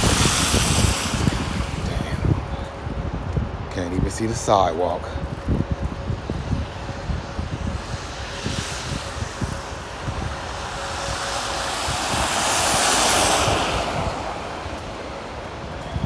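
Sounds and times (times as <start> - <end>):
passing vehicle hiss: 0.0 - 2.6, 6.8 - 16.0
wind buffeting microphone: 0.0 - 16.0.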